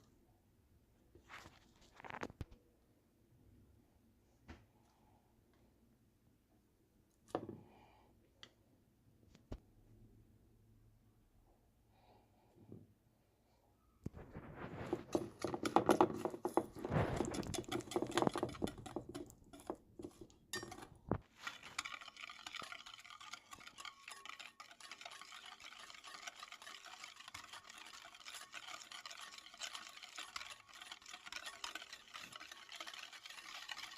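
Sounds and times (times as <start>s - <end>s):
batter stirred in a bowl: 14.1s - 33.9s.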